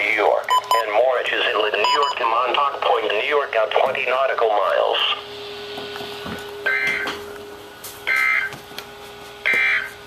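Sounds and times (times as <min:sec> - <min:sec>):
radio tone and hiss: 0:00.1 - 0:05.2.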